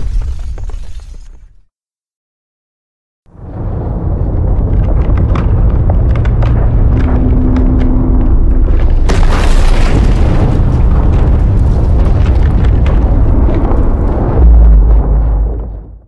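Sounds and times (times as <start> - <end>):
deep low boom: 3.3 - 16.0
explosion burst: 3.3 - 16.0
heavy explosion rumble: 3.3 - 16.0.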